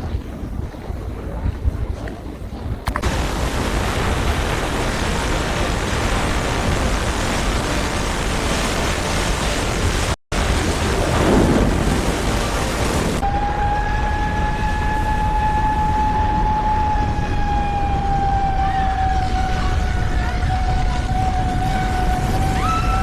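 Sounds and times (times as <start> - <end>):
loud rushing roar: 3.0 - 23.0
siren wailing: 10.9 - 23.0.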